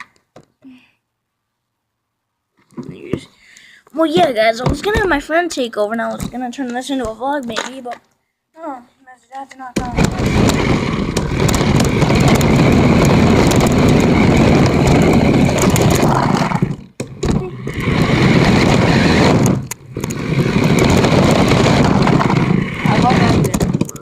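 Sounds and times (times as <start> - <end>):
electric toy car motor and wheels: 9.8 - 24.0.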